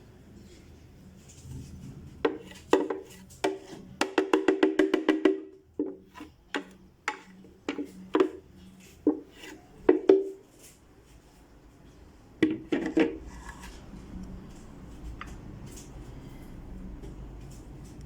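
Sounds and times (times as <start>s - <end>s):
faint scraping: 5.9s - 18.0s.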